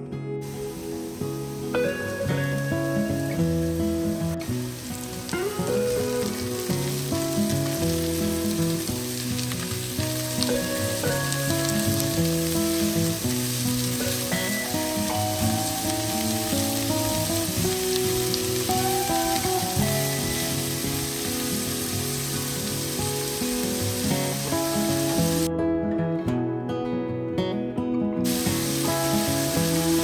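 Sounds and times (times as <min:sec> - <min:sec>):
food sizzling in oil: 0:00.4 - 0:25.5, 0:28.3 - 0:30.0.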